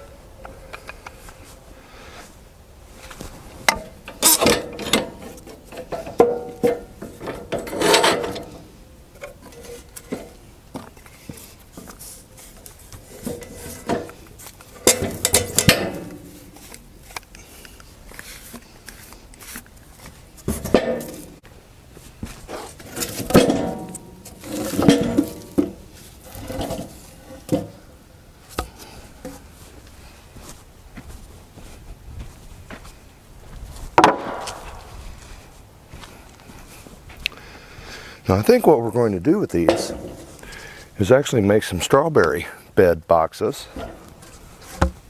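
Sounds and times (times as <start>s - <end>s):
wood knocking and scraping: 3.1s - 17.4s, 22.2s - 27.8s, 28.5s - 29.5s, 34.0s - 35.4s, 43.7s - 45.0s
loud bangs: 34.0s - 35.0s.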